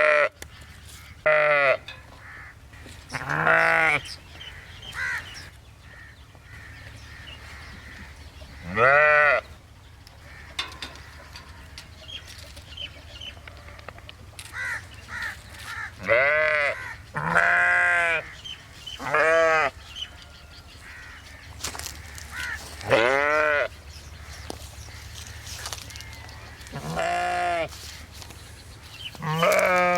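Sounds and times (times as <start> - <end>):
sheep bleating: 0.0 - 0.3, 1.2 - 1.8, 3.1 - 4.1, 8.6 - 9.5, 16.0 - 18.4, 19.0 - 19.8, 22.4 - 23.7, 26.7 - 27.8, 29.2 - 29.9.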